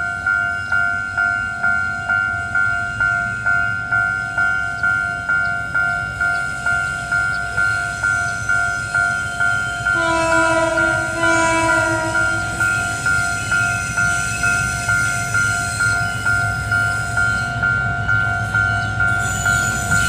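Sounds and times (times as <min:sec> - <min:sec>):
level-crossing warning bell ringing: 0:00.0 - 0:20.0
train horn: 0:09.8 - 0:14.4.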